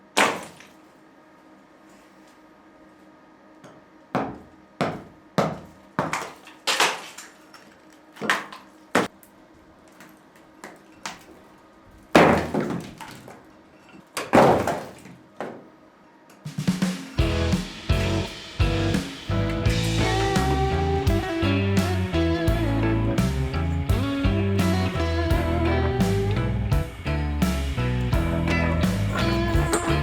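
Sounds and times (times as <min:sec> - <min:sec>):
falling stone crashes: 0:12.2 - 0:13.4, 0:14.2 - 0:15.1.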